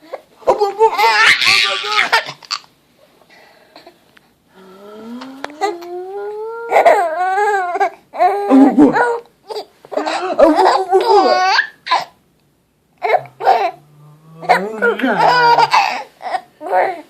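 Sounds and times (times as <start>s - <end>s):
baby laughing: 0.4s - 2.7s, 6.6s - 12.2s, 13.0s - 13.8s, 14.4s - 17.0s
voice gliding upward: 4.6s - 6.6s, 13.1s - 15.7s
baby hiccups: 13.0s - 13.8s.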